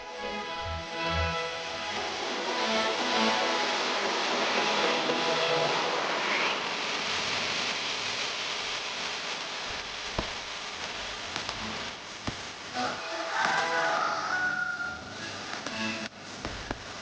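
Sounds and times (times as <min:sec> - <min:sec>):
steady noise hiss: 0:00.0 - 0:17.0.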